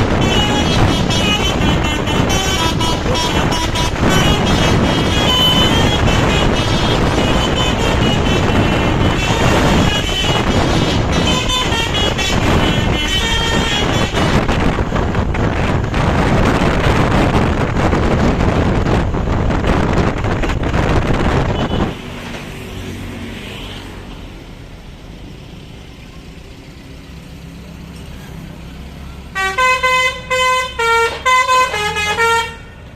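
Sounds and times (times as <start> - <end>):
bus horn playing a tune: 0.0 - 14.9, 21.5 - 22.0, 29.3 - 32.8
engine and road noise: 0.0 - 32.9.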